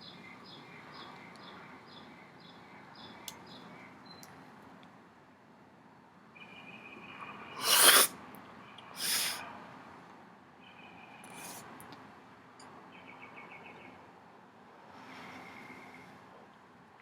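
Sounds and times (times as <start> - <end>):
person forcefully exhaling: 9.0 - 9.4.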